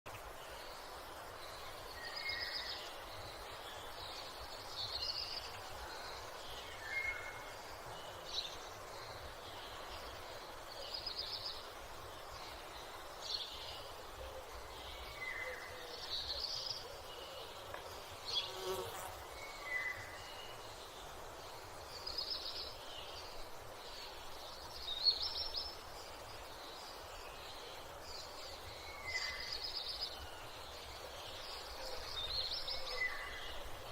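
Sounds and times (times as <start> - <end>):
background hiss: 0.1 - 33.9.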